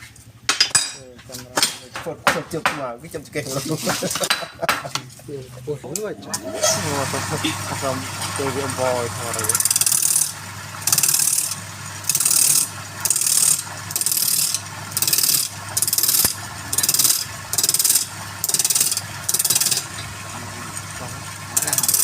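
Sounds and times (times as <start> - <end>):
low motor hum: 5.0 - 22.0
wood scraping rasps: 9.4 - 20.0.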